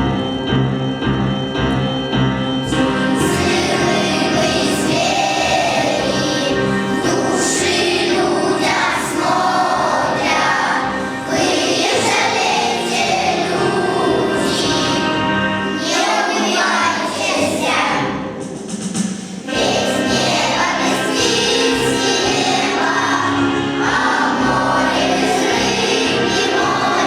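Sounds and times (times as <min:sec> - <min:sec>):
children's choir singing: 0:00.0 - 0:27.0
instrumental backing track: 0:00.0 - 0:27.0.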